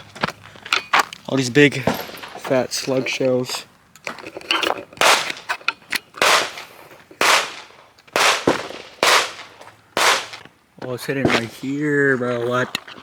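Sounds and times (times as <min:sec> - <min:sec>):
gunshots with echo: 0:01.8 - 0:02.8, 0:05.0 - 0:05.5, 0:06.2 - 0:10.5.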